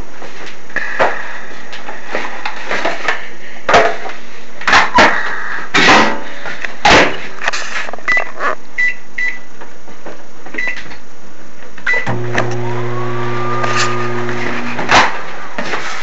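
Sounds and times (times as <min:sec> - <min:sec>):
keypad beeps: 0:10.6 - 0:10.8
microwave humming: 0:12.0 - 0:15.4.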